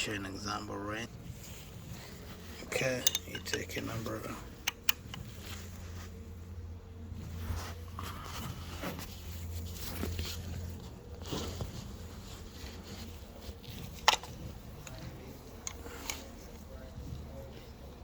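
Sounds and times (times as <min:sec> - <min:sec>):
hand tools rustling and knocking: 0:01.4 - 0:06.2
sharp metallic click: 0:04.7 - 0:05.3.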